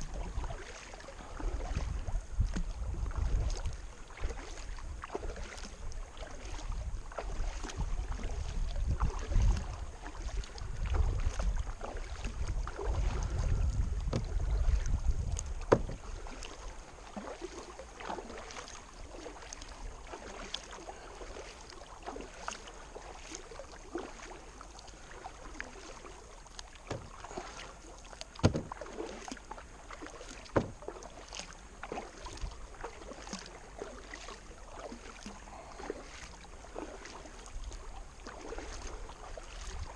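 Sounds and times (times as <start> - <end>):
wind rumbling on microphone: 0.0 - 0.6, 1.2 - 17.2
paddle splashing water: 0.0 - 39.9.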